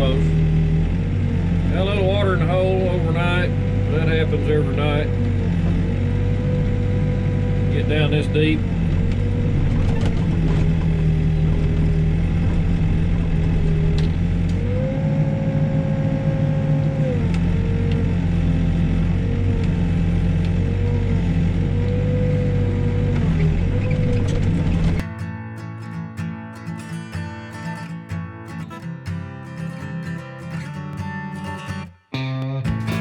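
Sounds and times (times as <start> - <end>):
diesel engine under load: 0.0 - 25.0
hydraulic whine: 0.0 - 25.0.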